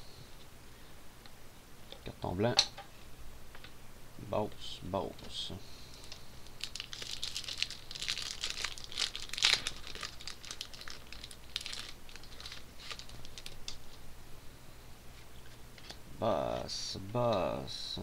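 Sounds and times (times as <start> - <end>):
foil wrapper crinkling and tearing: 5.9 - 13.9.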